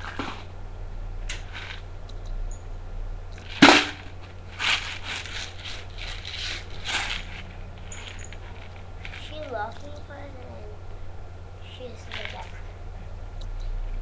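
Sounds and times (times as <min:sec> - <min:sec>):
steady low hum: 0:00.0 - 0:14.0
soft rustling: 0:03.4 - 0:10.8.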